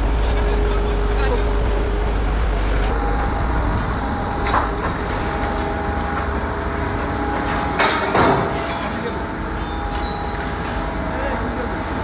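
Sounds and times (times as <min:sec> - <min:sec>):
diesel engine rumbling: 0:00.0 - 0:07.8.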